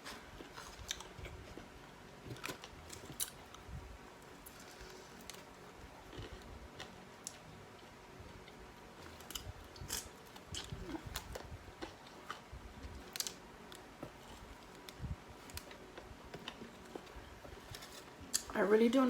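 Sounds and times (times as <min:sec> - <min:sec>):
person chewing: 0:04.4 - 0:07.4, 0:08.4 - 0:13.4.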